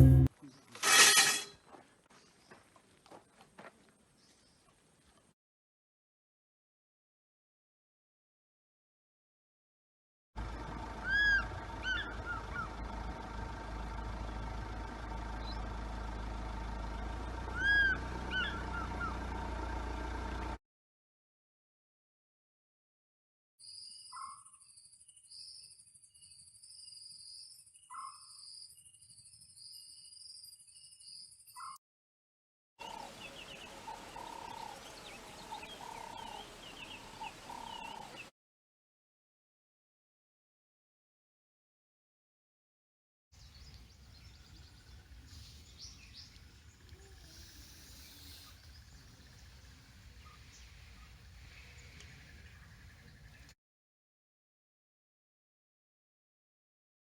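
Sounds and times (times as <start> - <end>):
steady low rumble: 0.0 - 0.3
birds calling: 10.9 - 16.0, 17.2 - 19.4, 32.8 - 38.3, 43.4 - 53.5
animal calling: 11.0 - 12.8, 17.5 - 19.3, 32.8 - 38.3
steady outdoor hiss: 32.8 - 38.3, 43.4 - 53.5.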